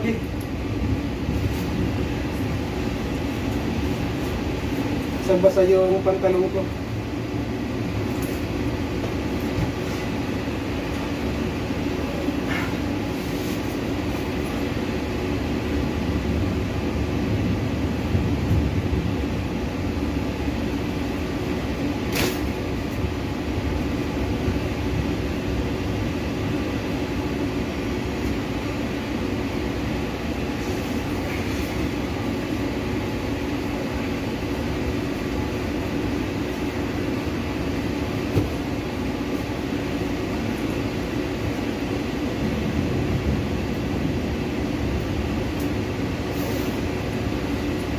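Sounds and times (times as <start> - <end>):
strong wind: 0.0 - 47.9
heavy rain: 14.8 - 47.9.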